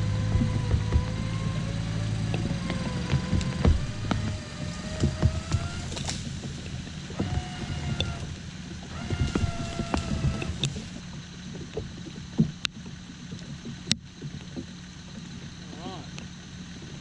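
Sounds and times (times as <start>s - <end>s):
vehicle winch whining: 0.0s - 11.3s.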